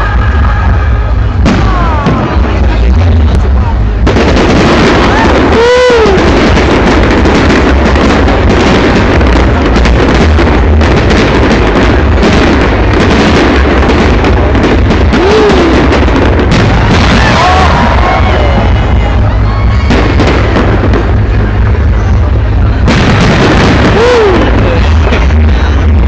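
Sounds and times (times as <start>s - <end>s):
fireworks crackling and banging: 0.0s - 26.0s
pitched whoop: 5.0s - 6.5s, 16.8s - 20.5s, 23.9s - 24.6s.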